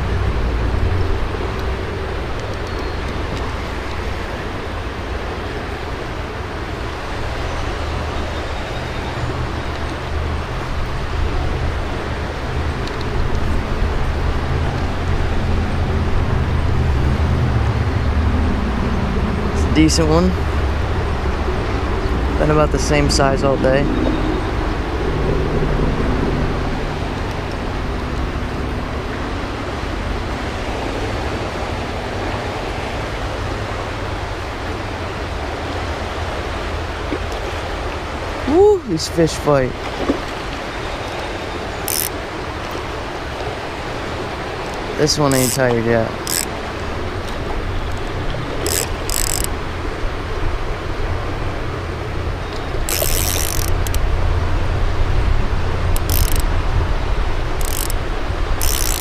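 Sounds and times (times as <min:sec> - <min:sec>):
creek rushing: 0:00.0 - 0:59.0
fishing reel drag buzzing: 0:41.1 - 0:42.8, 0:45.2 - 0:46.6, 0:47.8 - 0:49.6, 0:52.8 - 0:54.0, 0:56.0 - 0:56.5, 0:57.5 - 0:58.0, 0:58.6 - 0:59.0.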